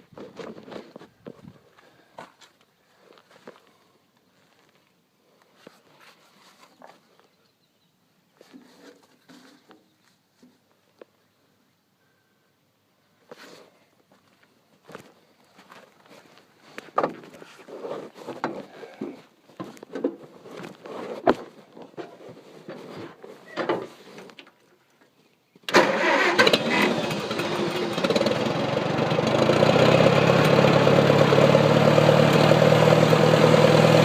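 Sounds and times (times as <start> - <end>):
engine starting and idling: 25.7 - 34.0.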